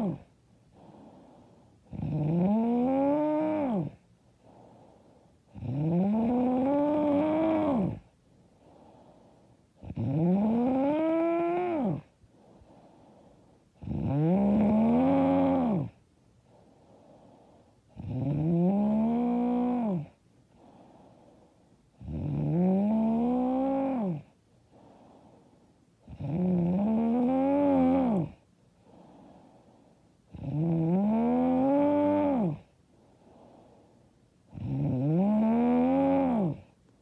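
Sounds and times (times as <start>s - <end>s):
quiet breathing: 0.0s - 2.2s, 3.0s - 10.1s, 11.0s - 35.2s, 35.9s - 37.0s
woman snoring loudly: 1.9s - 4.0s, 5.5s - 8.1s, 9.8s - 12.1s, 13.8s - 16.0s, 17.9s - 20.2s, 22.0s - 24.3s, 26.0s - 28.4s, 30.3s - 32.7s, 34.5s - 36.7s.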